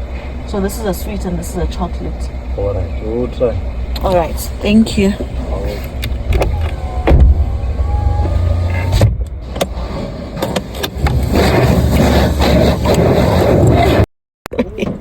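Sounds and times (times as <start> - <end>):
car cabin low rumble: 0.0 - 15.0
power window motor whirring: 5.6 - 14.0.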